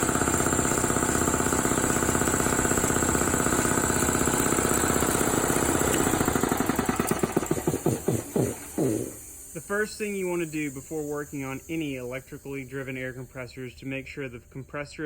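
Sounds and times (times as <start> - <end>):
machinery pulsing: 4.4 - 13.7.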